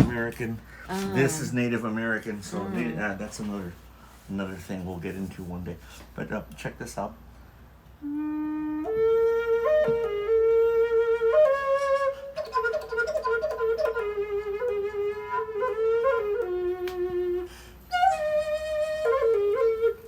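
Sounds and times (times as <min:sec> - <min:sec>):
small flute melody: 0:00.9 - 0:01.8, 0:08.0 - 0:20.0.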